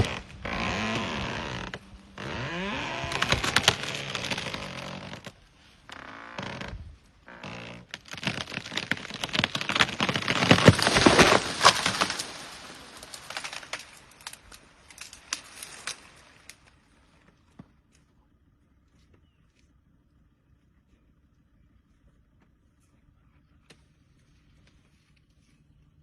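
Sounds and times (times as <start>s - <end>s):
leafy branches thrashing: 0.0s - 16.7s
wood cracking and snapping: 0.0s - 16.7s.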